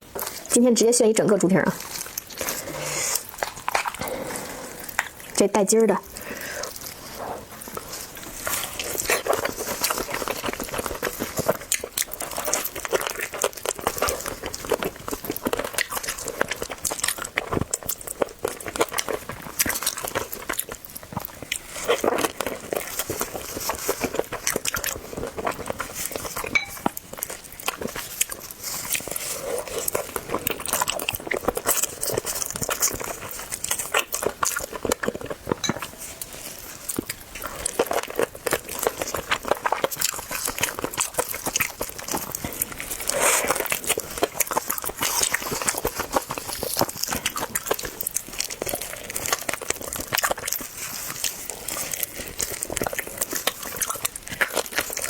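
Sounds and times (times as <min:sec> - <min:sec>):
person chewing with mouth clicks: 0:00.0 - 0:00.6, 0:01.6 - 0:05.4, 0:06.0 - 0:55.0.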